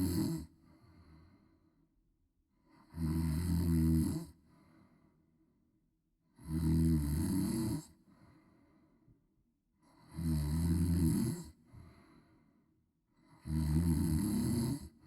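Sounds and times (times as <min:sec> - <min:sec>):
woman snoring loudly: 0:00.0 - 0:00.4, 0:02.9 - 0:04.3, 0:06.4 - 0:07.8, 0:10.1 - 0:11.4, 0:13.4 - 0:14.9
soft breath out: 0:11.7 - 0:12.6.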